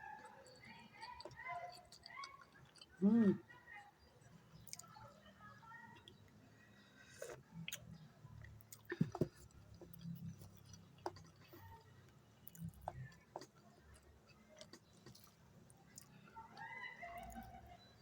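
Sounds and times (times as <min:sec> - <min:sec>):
person chewing with mouth smacks: 0:07.1 - 0:16.2.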